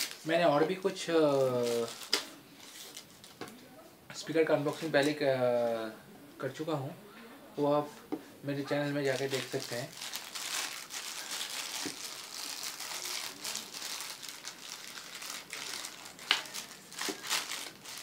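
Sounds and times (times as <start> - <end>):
packaging crinkling and rustling: 0.0 - 3.5, 8.7 - 18.0.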